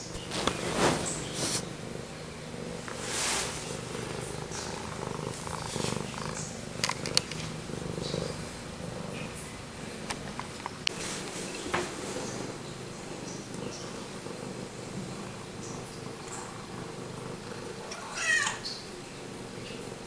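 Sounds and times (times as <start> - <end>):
soft rustle: 0.0 - 2.2, 2.8 - 12.7
cat purring: 0.0 - 20.0.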